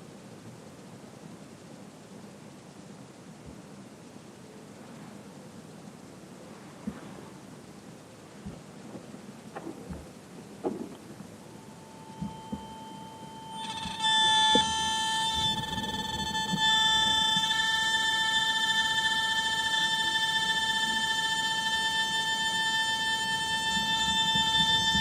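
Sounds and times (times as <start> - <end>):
light knocks: 8.4 - 11.1
high-pitched gimbal motor whine: 11.4 - 25.0.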